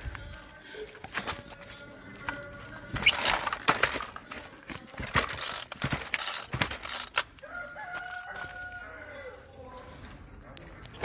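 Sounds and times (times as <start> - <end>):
clattering knocks and rattles: 3.0 - 7.2
rooster crowing: 7.4 - 9.6.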